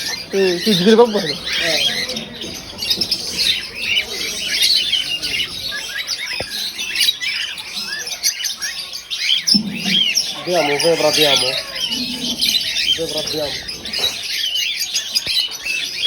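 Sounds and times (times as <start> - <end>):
small birds chirping: 0.0 - 16.0.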